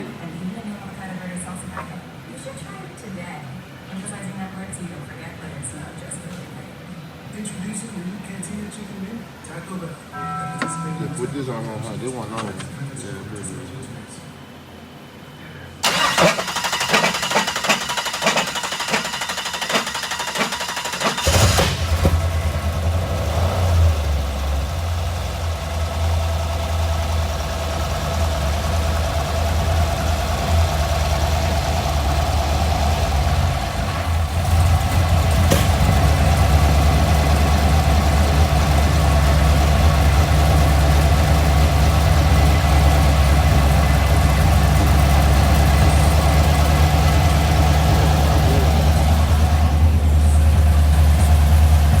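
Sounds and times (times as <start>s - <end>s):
engine idling: 15.8s - 52.0s.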